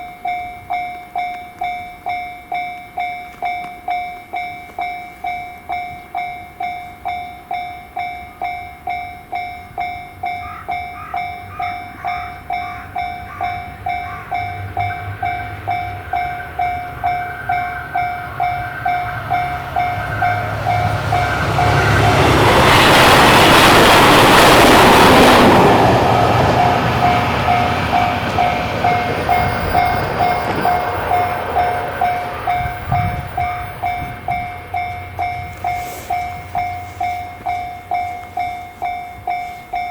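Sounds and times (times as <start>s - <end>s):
level crossing bell ringing: 0.0s - 23.0s, 26.2s - 39.9s
train wheels rushing past: 12.9s - 39.9s.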